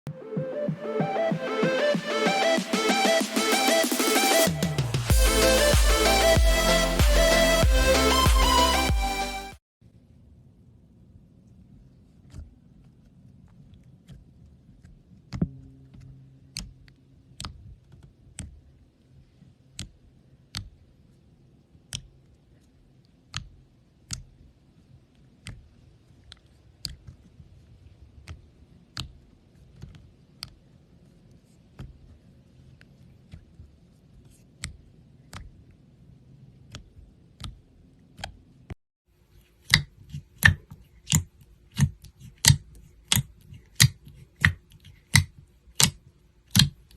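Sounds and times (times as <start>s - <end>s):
slime clicking: 39.5s - 46.9s.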